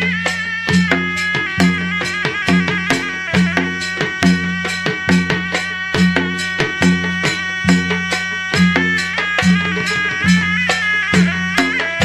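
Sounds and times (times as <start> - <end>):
drum strokes: 0.0 - 12.0
reed pipe melody: 0.0 - 12.0.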